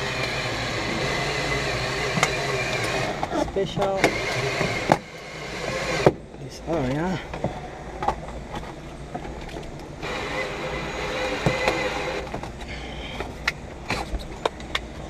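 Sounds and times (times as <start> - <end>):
small electric power tool running: 0.0 - 6.2, 10.0 - 12.3.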